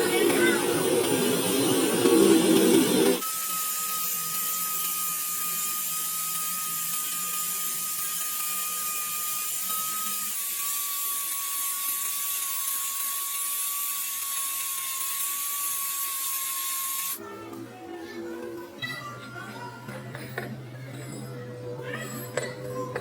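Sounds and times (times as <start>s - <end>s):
machine high whine: 0.0s - 17.2s.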